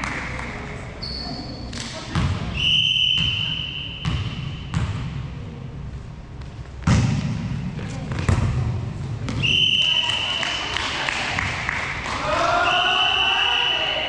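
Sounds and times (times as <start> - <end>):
referee's whistle: 2.6 - 4.2, 9.4 - 10.6, 12.6 - 14.0.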